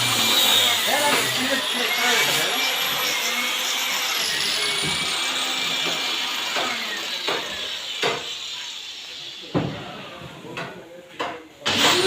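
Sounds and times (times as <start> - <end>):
power tool motor whining: 0.0 - 9.2, 11.7 - 12.0
sharp knocks: 6.6 - 8.3.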